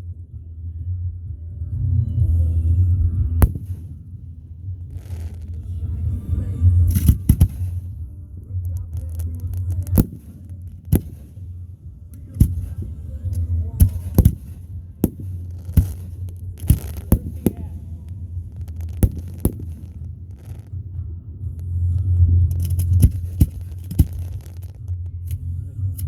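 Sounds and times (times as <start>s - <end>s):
low rumble: 0.0s - 26.0s
fireworks bangs: 3.4s - 6.1s, 6.9s - 8.0s, 8.9s - 21.0s, 22.6s - 24.8s.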